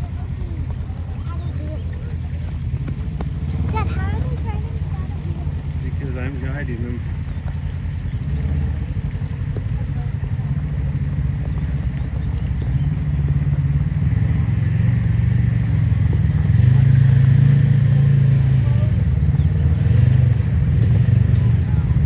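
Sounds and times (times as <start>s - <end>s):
vehicle engine running at low revs: 0.0s - 22.0s.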